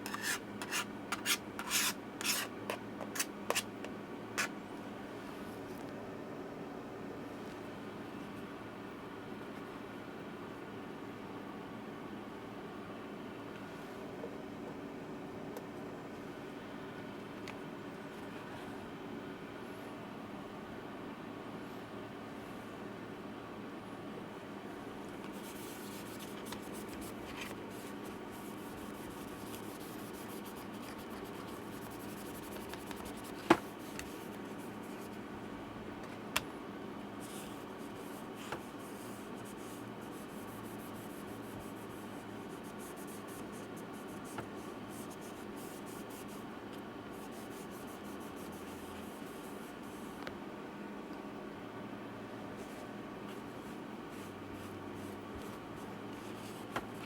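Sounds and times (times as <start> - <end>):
tools scraping and rubbing: 0.0 - 3.7
steady low hum: 0.0 - 57.0.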